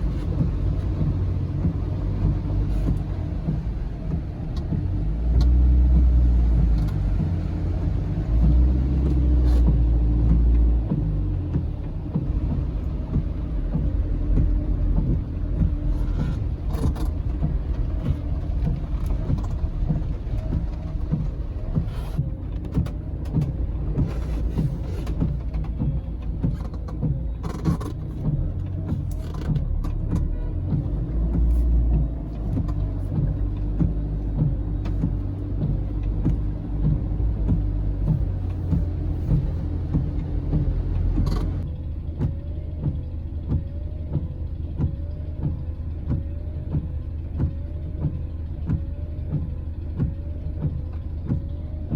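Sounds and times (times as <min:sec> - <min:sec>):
car engine and road noise: 0:00.0 - 0:51.9.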